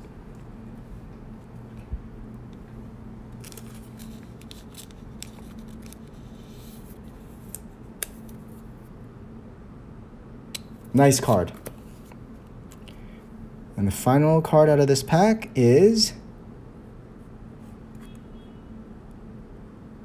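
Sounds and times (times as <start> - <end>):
low steady hum: 0.0 - 20.0
cards rustling in plastic sleeve: 3.3 - 8.6.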